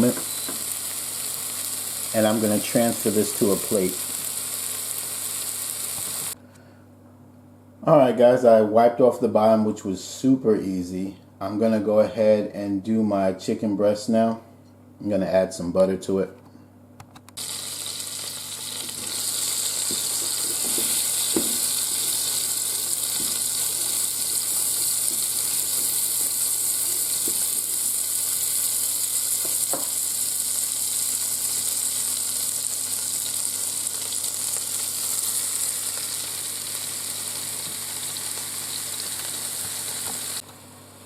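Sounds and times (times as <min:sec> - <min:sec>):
chicken sizzling in butter: 0:00.0 - 0:06.4, 0:17.4 - 0:40.4.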